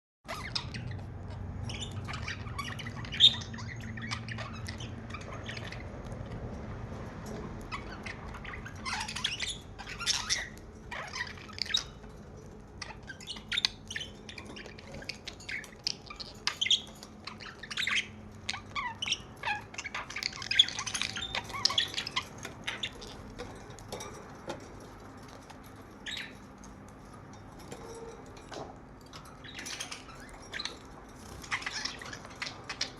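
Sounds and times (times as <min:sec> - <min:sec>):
budgerigar warbling and chattering: 0:12.8 - 0:23.3.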